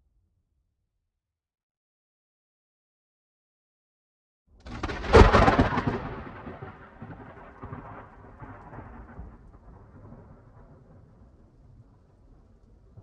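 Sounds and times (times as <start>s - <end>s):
thunder crack: 4.6s - 13.0s
thunder rumble: 4.6s - 13.0s.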